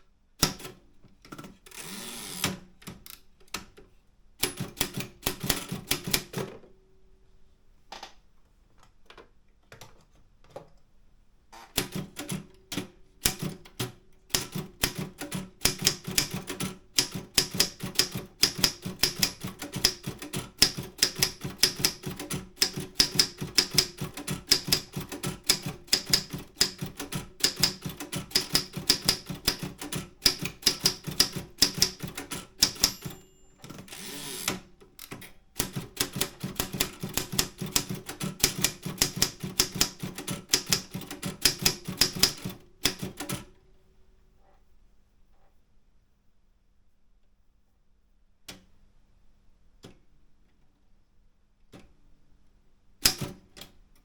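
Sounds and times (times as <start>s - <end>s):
manual typewriter typing: 4.4s - 6.5s, 11.6s - 43.5s.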